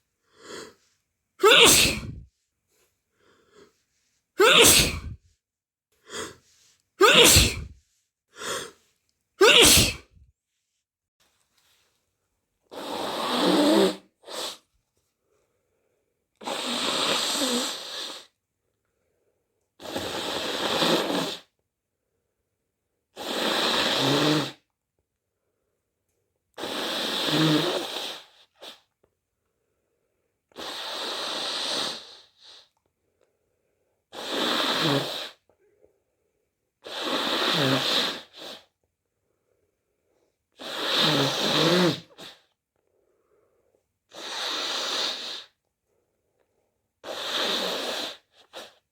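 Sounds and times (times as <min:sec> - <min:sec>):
person breathing loudly: 0:00.2 - 0:02.3, 0:04.4 - 0:05.2, 0:06.0 - 0:08.8.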